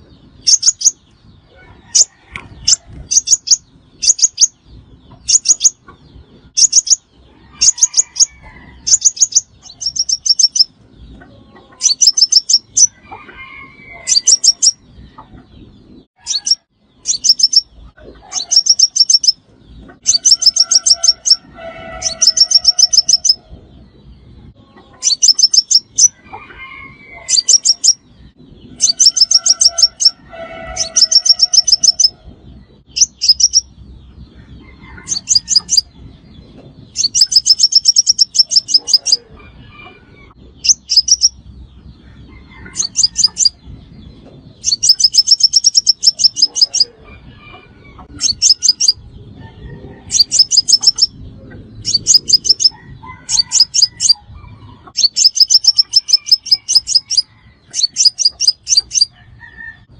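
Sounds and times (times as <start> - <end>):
bird high rapid trills: 20.0 - 23.4, 28.7 - 32.2, 44.6 - 46.9, 50.1 - 51.2, 55.0 - 59.1.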